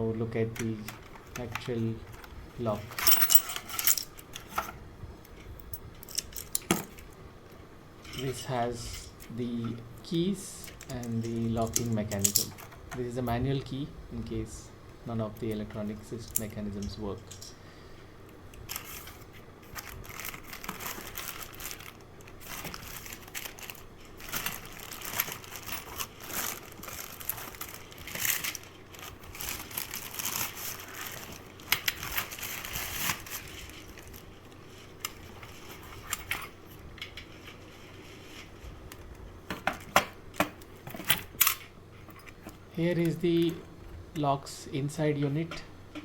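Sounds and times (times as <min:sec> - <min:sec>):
plastic packaging crinkling: 0:18.6 - 0:36.5.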